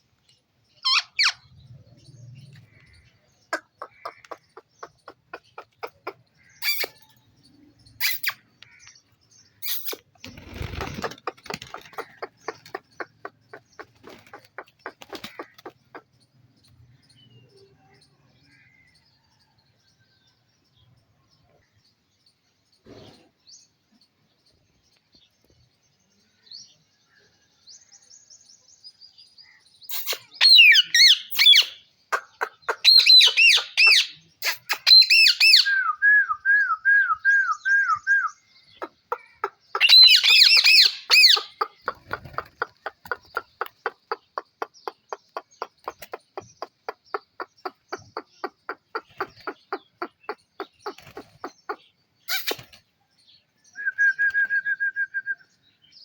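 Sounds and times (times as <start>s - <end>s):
parrot chirping: 0.8s - 1.5s, 3.5s - 7.2s, 8.0s - 8.4s, 9.6s - 10.1s, 29.9s - 35.7s, 38.8s - 41.9s
parrot squawking: 0.8s - 1.5s, 5.8s - 7.1s, 29.9s - 35.7s, 39.1s - 41.9s.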